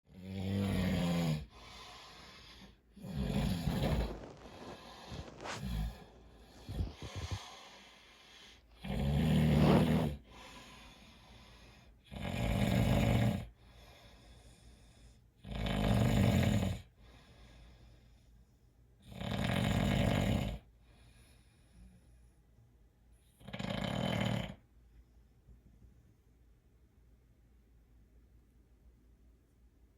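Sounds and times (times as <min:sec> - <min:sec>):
man snoring: 0:00.1 - 0:01.6, 0:03.0 - 0:07.9, 0:08.8 - 0:10.4, 0:12.1 - 0:13.5, 0:15.4 - 0:16.8, 0:19.1 - 0:20.6, 0:23.4 - 0:24.6
quiet breaths: 0:00.2 - 0:19.0, 0:19.6 - 0:23.4.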